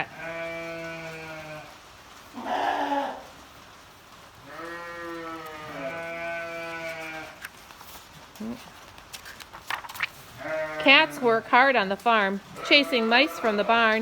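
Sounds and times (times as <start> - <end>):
sheep bleating: 0.0 - 3.3, 4.4 - 7.4, 10.4 - 11.4, 12.5 - 14.0.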